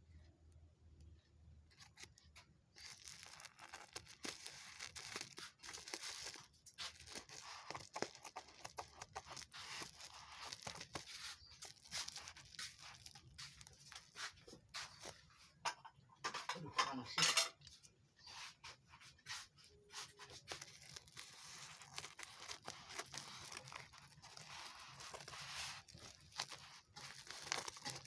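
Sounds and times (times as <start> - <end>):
packaging torn and crinkled: 1.7 - 15.2, 20.0 - 28.0.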